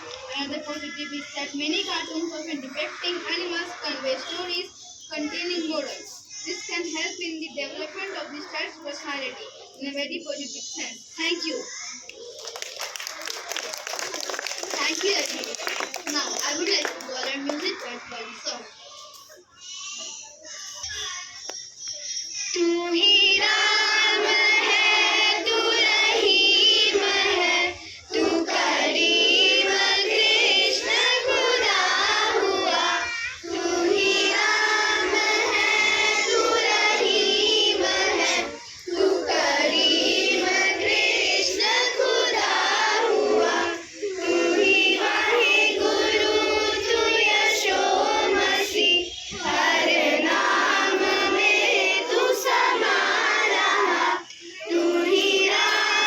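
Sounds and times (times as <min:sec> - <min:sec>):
children singing together: 0:02.4 - 0:04.5, 0:20.8 - 0:56.0.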